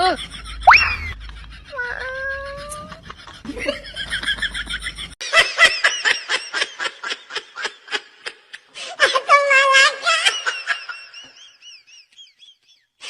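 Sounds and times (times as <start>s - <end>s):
high-pitched laughter: 0.0s - 7.9s.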